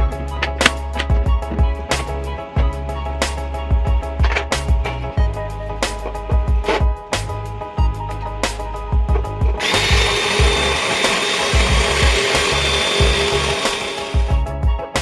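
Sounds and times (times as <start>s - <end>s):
background music with steady beat: 0.0s - 15.0s
power tool running: 9.5s - 14.4s.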